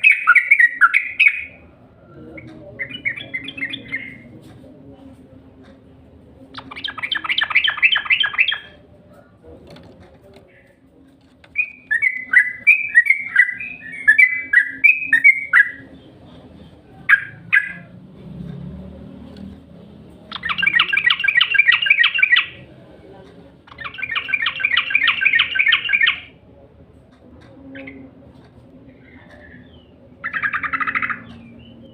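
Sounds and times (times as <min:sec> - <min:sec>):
bulbul chattering trill: 0:20.3 - 0:22.6.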